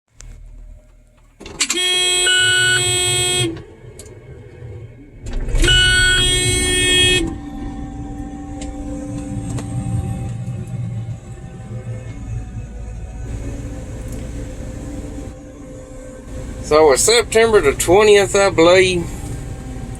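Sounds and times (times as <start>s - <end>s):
vehicle horn long blasts: 1.6s - 3.6s, 5.5s - 11.7s, 13.2s - 18.0s
steady low rumble: 2.8s - 19.9s.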